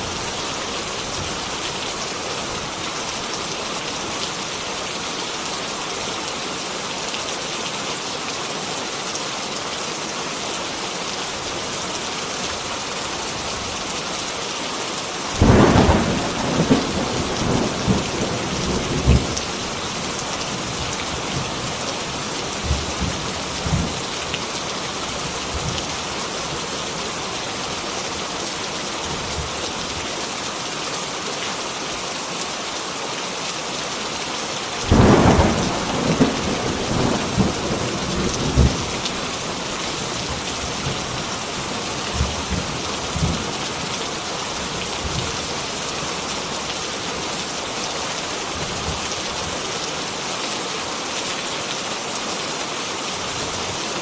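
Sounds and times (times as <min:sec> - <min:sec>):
heavy rain: 0:00.0 - 0:54.0
thunder: 0:15.4 - 0:19.4, 0:34.9 - 0:39.2.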